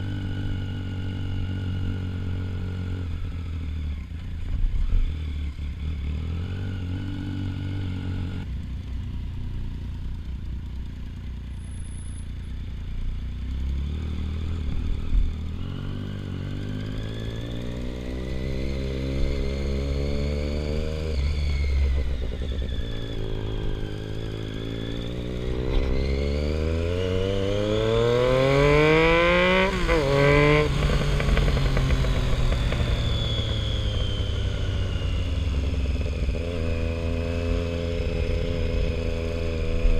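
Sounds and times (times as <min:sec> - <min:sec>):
motorcycle engine accelerating: 0:00.0 - 0:39.9
low wind rumble: 0:21.0 - 0:36.5.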